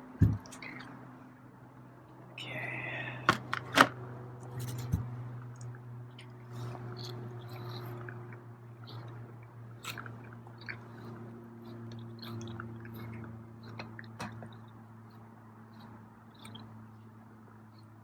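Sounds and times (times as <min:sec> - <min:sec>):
cat chewing wet food: 0:06.6 - 0:14.8.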